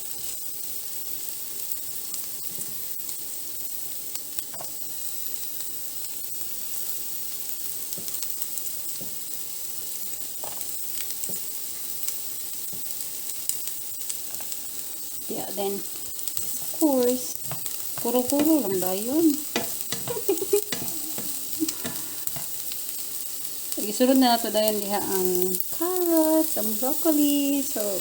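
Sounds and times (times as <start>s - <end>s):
food sizzling in oil: 0.0s - 28.0s
utensil clicking and scraping pan: 14.2s - 14.6s, 15.8s - 22.8s.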